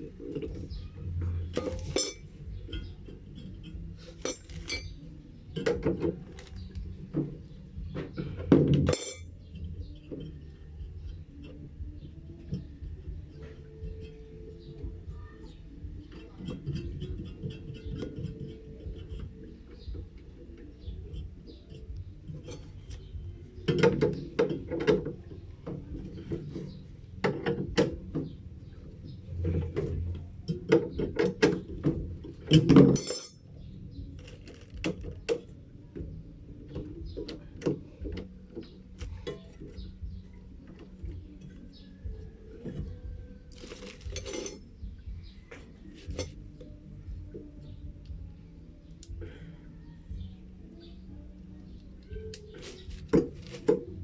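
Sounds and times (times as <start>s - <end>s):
low steady hum: 0.0s - 54.0s
tools clinking on metal: 1.5s - 5.0s, 8.6s - 9.3s, 32.5s - 33.5s, 43.5s - 44.7s, 45.9s - 46.4s.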